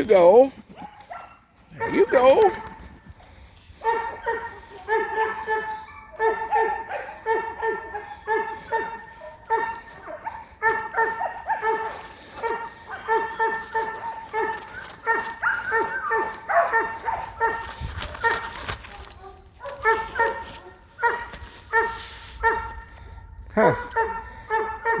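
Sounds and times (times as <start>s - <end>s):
dog whining and yipping: 3.8s - 22.6s.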